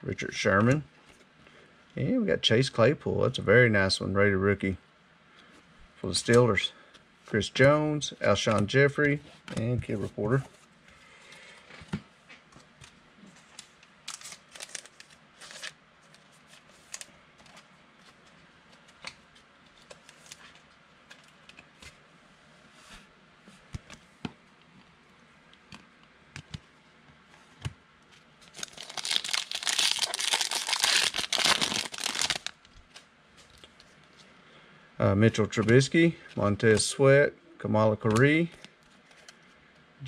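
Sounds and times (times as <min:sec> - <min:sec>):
foil wrapper tearing: 0:14.1 - 0:15.8, 0:28.5 - 0:32.6
cards clicking and rustling: 0:28.5 - 0:33.9.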